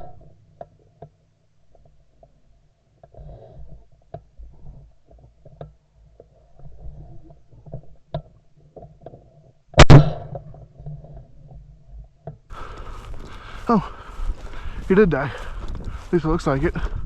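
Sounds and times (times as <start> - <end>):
shotgun blast: 9.8 - 10.4
muffled low rumbling: 11.6 - 17.0.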